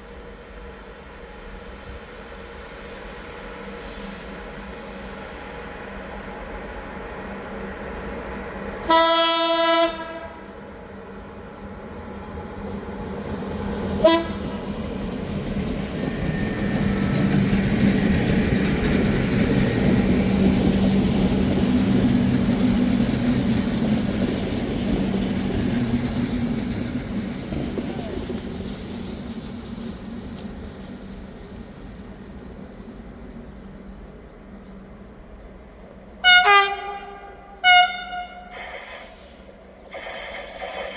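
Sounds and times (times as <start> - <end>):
train rumbling past: 0.0 - 40.9
locomotive humming: 3.1 - 40.9
train horn toot: 8.8 - 10.5, 14.0 - 14.6, 36.2 - 38.6.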